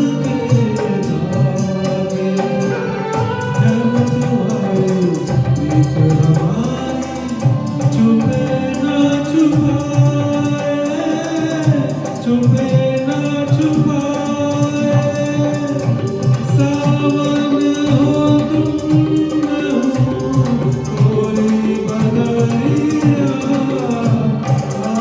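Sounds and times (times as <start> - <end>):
tabla: 0.0 - 25.0.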